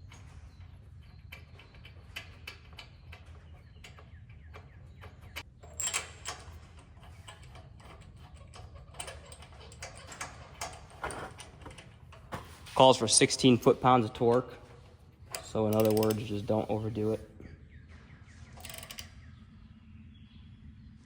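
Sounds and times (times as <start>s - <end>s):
ratchet wrench clicking: 15.4s - 16.4s, 18.6s - 19.1s.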